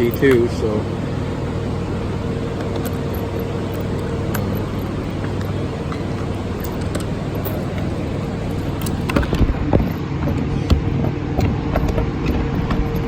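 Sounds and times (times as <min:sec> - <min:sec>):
metal sockets clicking: 0:00.0 - 0:09.4
steady background hum: 0:00.0 - 0:13.0.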